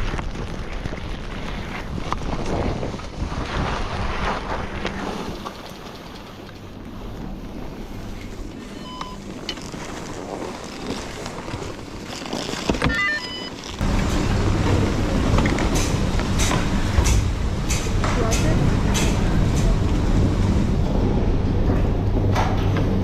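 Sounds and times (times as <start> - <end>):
vehicle running with road rumble: 0.0 - 23.0
short electronic beep: 8.7 - 9.2, 12.9 - 13.5
beeping chirps: 12.9 - 13.5.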